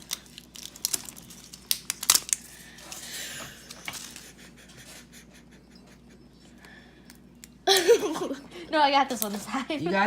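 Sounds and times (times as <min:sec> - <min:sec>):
plastic packaging tearing: 0:00.0 - 0:03.0
plastic packaging crinkling: 0:00.0 - 0:04.4.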